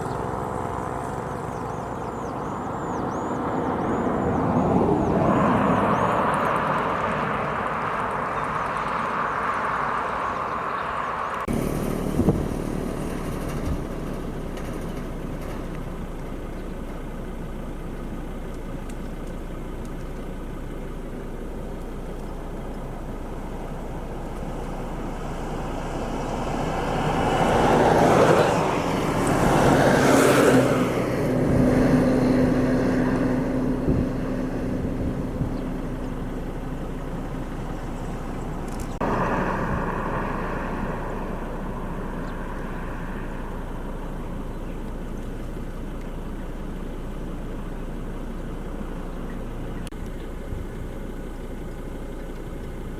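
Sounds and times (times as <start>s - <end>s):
vehicle passing by: 0.0s - 16.2s, 22.7s - 45.8s
quieter vehicle sound: 0.0s - 52.9s.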